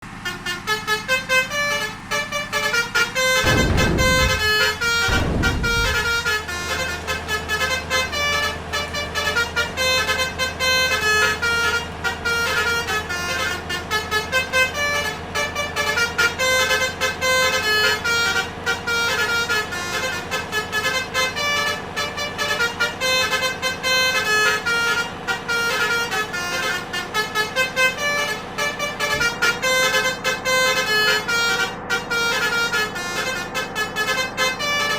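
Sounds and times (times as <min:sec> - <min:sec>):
musical bus horn melody: 0:00.0 - 0:34.9
deep falling horn glides: 0:03.4 - 0:06.6.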